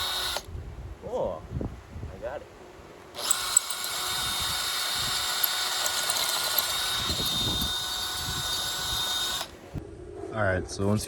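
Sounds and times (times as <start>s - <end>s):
electric drill running: 0.0s - 0.5s, 3.2s - 9.8s.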